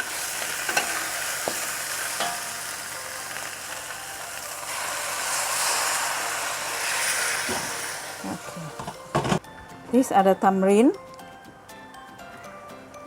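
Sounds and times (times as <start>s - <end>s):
food sizzling in hot pan: 0.0s - 9.4s.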